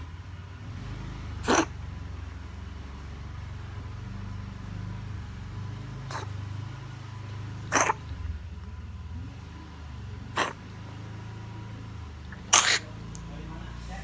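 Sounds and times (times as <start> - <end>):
cat coughing: 1.4 - 1.7, 6.1 - 6.3, 7.7 - 8.0, 10.4 - 10.6, 12.4 - 12.9.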